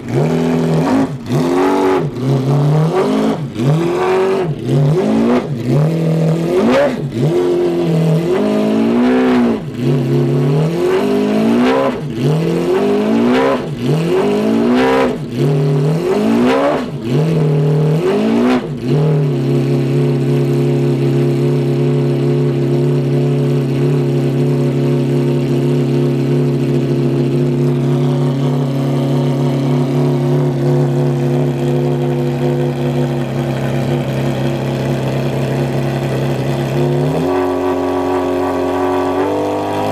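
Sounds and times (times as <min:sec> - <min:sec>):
car engine revving and idling: 0:00.0 - 0:39.9.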